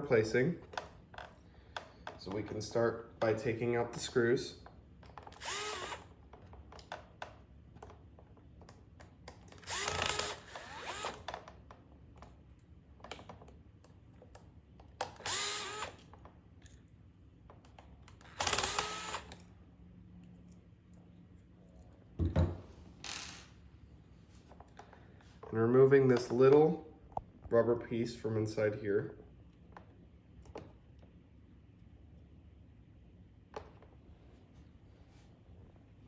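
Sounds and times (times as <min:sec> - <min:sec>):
cordless screwdriver motor: 0:05.2 - 0:06.2, 0:09.6 - 0:11.4, 0:15.0 - 0:16.1, 0:18.2 - 0:19.4.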